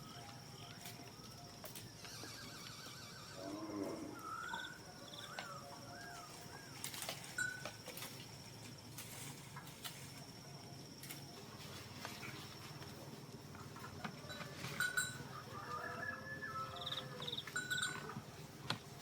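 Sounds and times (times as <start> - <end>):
thin high-pitched whine: 0.0 - 19.0
warbling bird chirps: 2.1 - 6.8.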